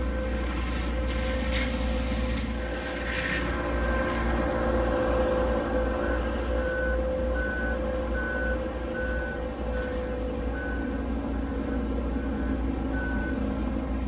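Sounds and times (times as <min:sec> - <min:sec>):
back-up alarm beeping: 0:00.0 - 0:02.8, 0:06.0 - 0:13.6
diesel engine drone: 0:00.0 - 0:14.0.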